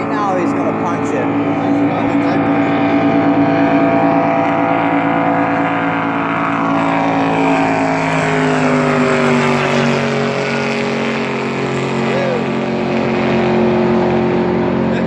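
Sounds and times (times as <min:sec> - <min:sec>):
speedboat engine at full throttle: 0:00.0 - 0:15.0.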